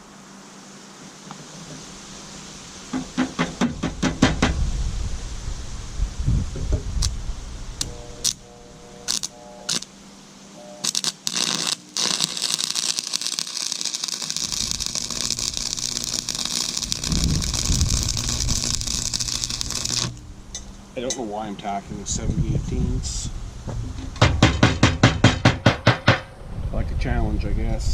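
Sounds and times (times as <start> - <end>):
welding arc buzzing and crackling: 6.8 - 10.0, 10.8 - 21.2
welding rod scratching: 7.8 - 9.9, 10.8 - 21.2.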